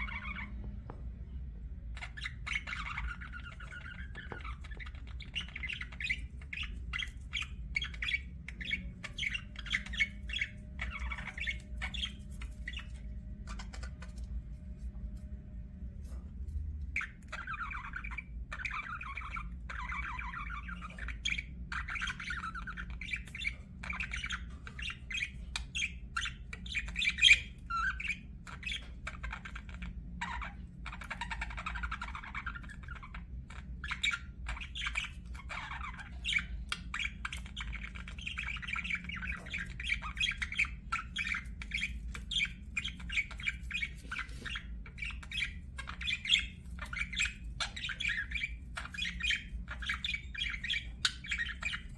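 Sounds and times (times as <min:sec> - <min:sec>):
budgerigar warbling and chirping: 0:00.0 - 0:00.9, 0:01.6 - 0:14.4, 0:16.8 - 0:51.9
steady low hum: 0:00.0 - 0:51.9.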